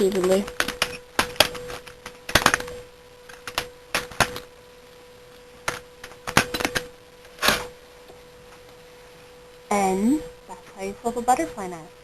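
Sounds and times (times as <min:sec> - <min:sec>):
faint steady tone: 0:00.0 - 0:12.0.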